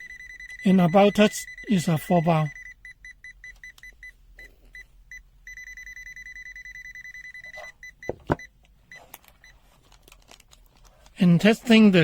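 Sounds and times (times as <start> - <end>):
multimeter high beeps: 0.0 - 9.6.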